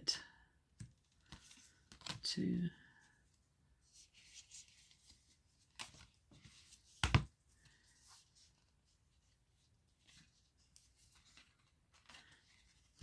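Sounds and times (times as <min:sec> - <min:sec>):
cards rustling and sliding: 0:00.8 - 0:02.2, 0:03.9 - 0:08.7, 0:10.0 - 0:13.0.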